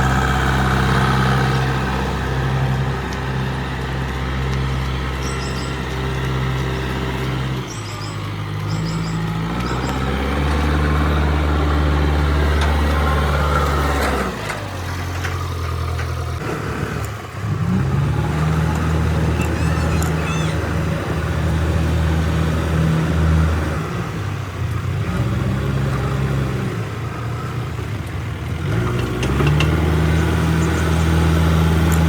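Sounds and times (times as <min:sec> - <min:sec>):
heavy diesel engine working: 0:00.0 - 0:32.0.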